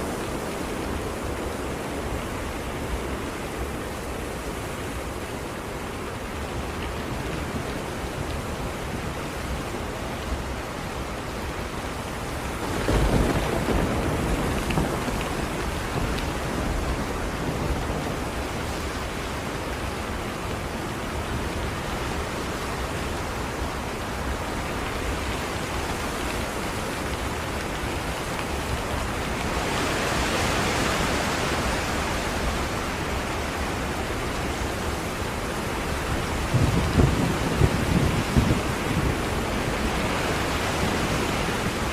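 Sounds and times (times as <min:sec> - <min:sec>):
heavy rain: 0:00.0 - 0:41.9
thunder rumbling: 0:12.6 - 0:18.5, 0:35.8 - 0:41.9.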